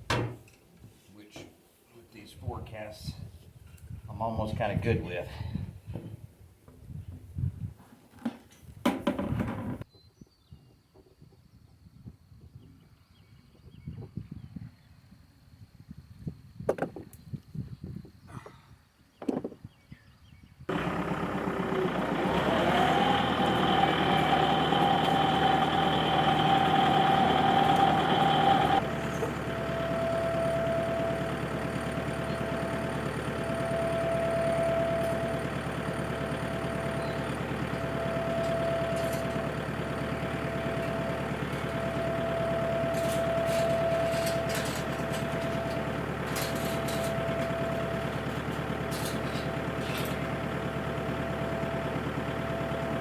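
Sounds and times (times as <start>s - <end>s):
faint whine: 20.7s - 48.2s
engine starting and running: 20.7s - 53.0s.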